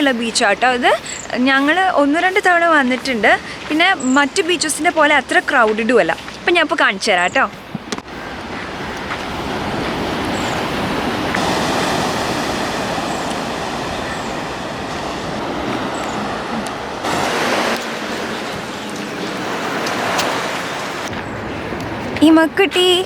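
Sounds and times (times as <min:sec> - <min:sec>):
seaside air rushing: 0:08.1 - 0:22.4.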